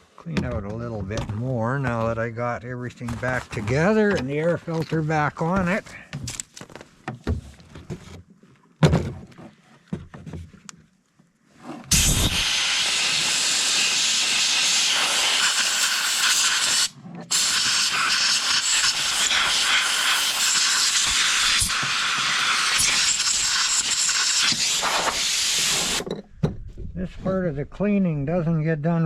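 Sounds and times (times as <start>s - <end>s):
compressed air hissing: 11.9s - 26.1s.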